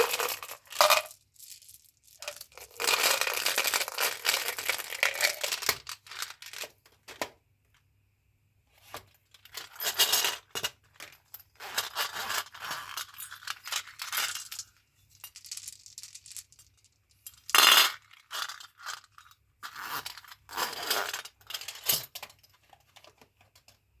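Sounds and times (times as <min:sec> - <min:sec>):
candy packaging crinkling: 0:00.0 - 0:06.7.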